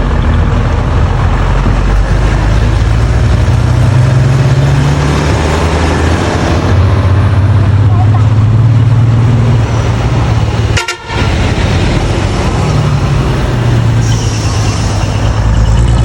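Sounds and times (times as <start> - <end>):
diesel truck engine running: 0.0 - 16.0
high horn tone: 10.7 - 11.6.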